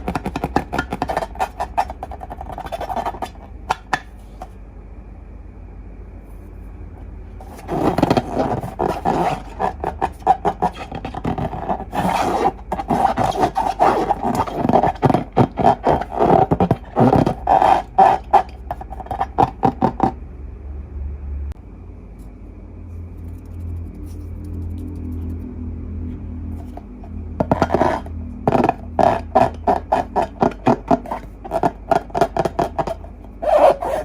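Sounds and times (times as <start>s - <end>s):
rubber balloons squeaking: 0.0s - 3.6s, 7.4s - 20.2s, 27.4s - 34.0s.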